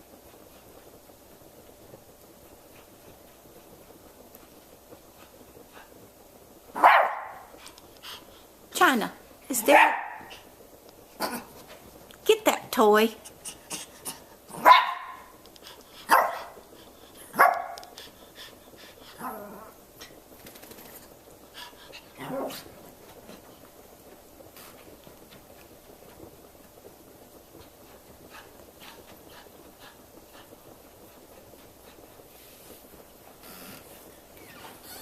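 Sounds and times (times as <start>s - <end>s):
dog barking: 6.8s - 7.5s, 9.6s - 10.3s, 14.5s - 15.3s, 16.1s - 16.6s, 17.3s - 17.8s.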